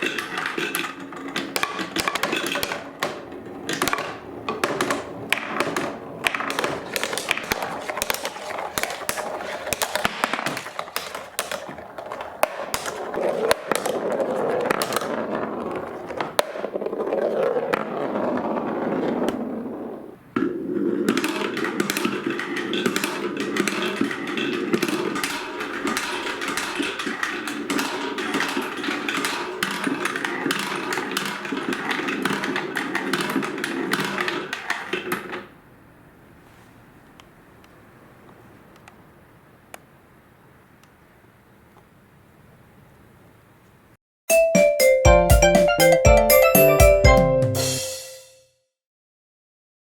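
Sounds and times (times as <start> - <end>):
marbles rolling on wooden track: 0.0 - 35.5.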